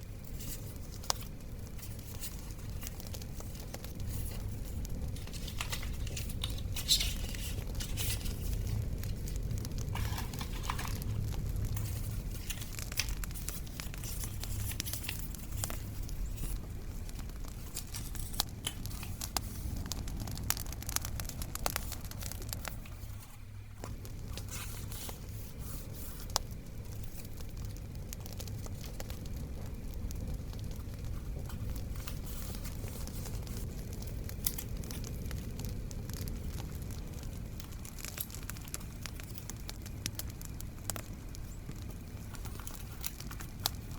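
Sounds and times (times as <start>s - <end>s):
crackling bonfire rumble: 0.0s - 43.9s
paper tearing and crinkling: 0.4s - 16.6s.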